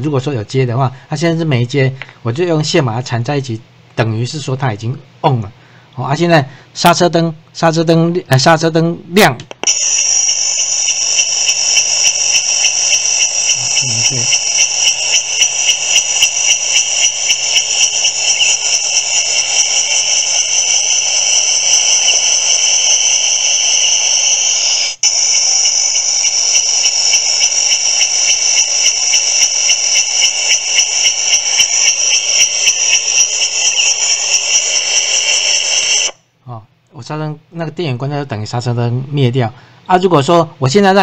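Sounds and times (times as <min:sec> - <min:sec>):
shrill pulsing cicada buzz: 0:09.7 - 0:36.2.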